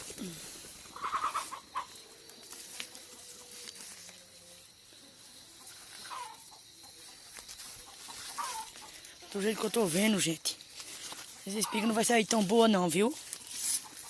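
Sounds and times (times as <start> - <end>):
chicken clucking: 0.8 - 9.7, 13.7 - 14.0.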